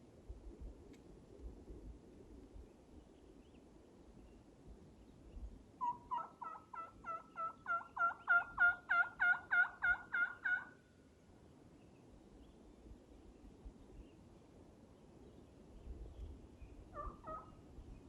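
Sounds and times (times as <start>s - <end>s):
turkey yelping: 5.8s - 10.8s, 16.9s - 17.6s.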